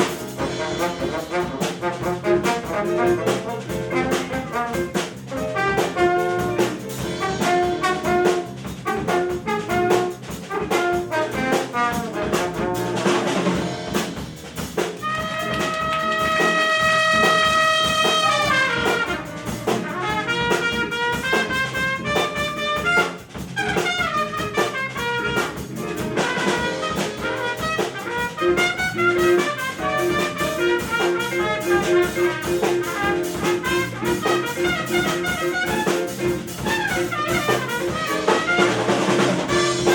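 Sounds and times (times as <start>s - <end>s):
big band brass playing: 0.0s - 39.9s
drum kit: 0.0s - 39.9s.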